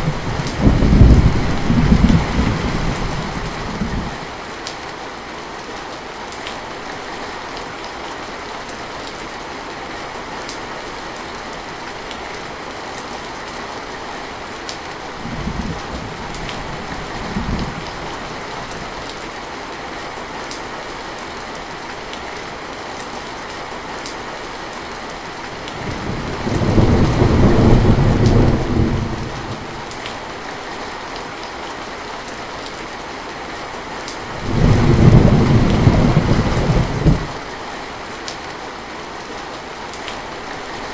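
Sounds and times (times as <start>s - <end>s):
thunder rumbling: 0.0s - 4.2s, 15.2s - 18.8s, 25.6s - 30.1s, 34.3s - 37.4s
heavy rain hissing: 0.0s - 4.4s, 15.1s - 19.0s, 25.3s - 30.8s, 33.9s - 37.7s.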